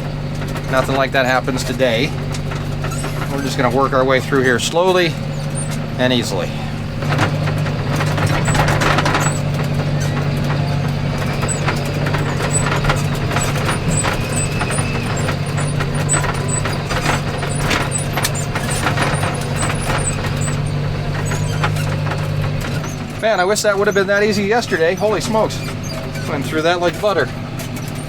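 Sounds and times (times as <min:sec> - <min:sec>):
machine rattles and knocks: 0:00.0 - 0:28.0
tractor engine under load: 0:00.0 - 0:28.0.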